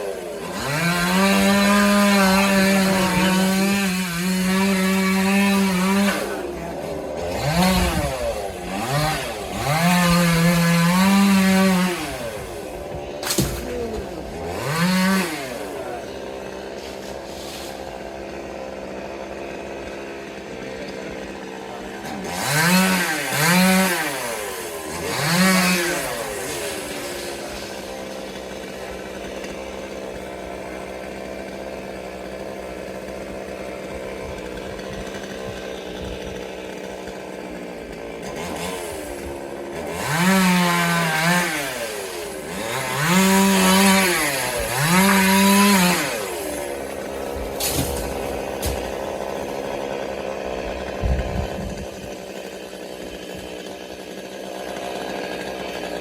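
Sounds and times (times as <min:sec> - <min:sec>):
chainsaw idling and revving: 0:00.0 - 0:56.0.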